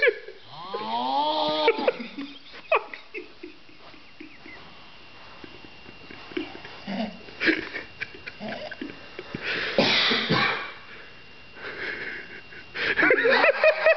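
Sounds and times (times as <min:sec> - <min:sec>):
loud snoring: 0:00.4 - 0:01.7.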